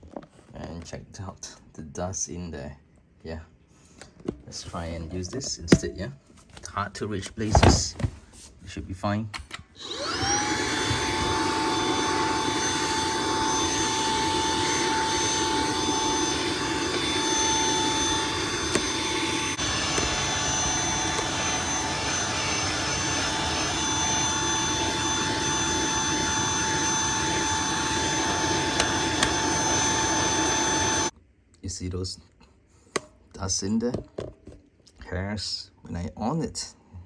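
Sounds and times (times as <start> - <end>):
stick vacuum whining: 7.3 - 8.1, 9.8 - 31.1.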